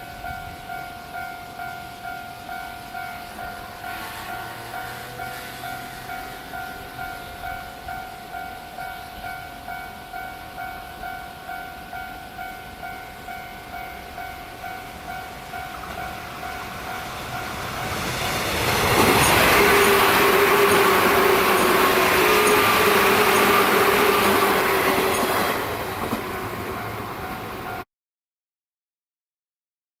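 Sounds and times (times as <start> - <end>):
train passing loudly: 0.0 - 27.8
level crossing alarm ringing: 4.4 - 27.8.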